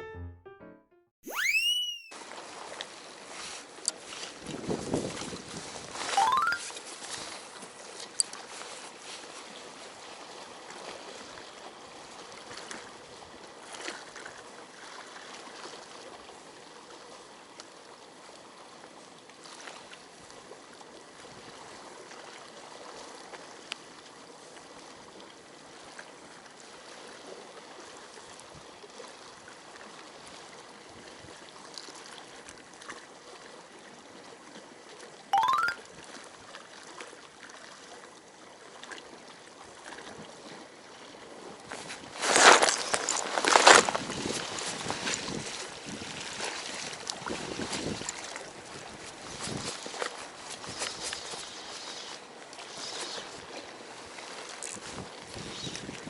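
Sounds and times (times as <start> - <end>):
moving water: 3.4 - 6.7, 31.5 - 35.8, 36.6 - 56.0.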